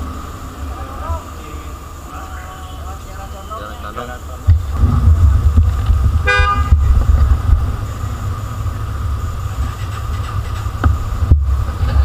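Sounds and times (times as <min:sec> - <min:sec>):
road noise: 0:00.0 - 0:12.0
motorcycle engine: 0:04.3 - 0:12.0
wind rumble on microphone: 0:04.4 - 0:12.0.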